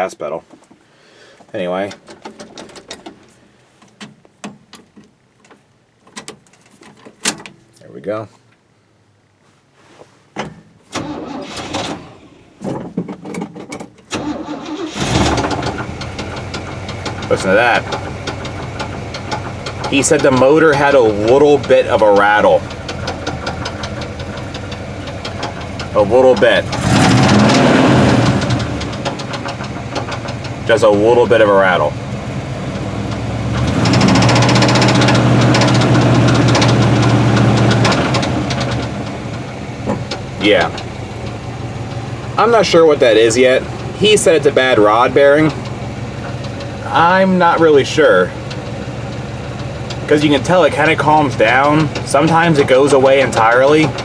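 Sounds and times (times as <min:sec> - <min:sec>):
engine cranking: 0:10.9 - 0:54.0
engine running: 0:14.1 - 0:54.0.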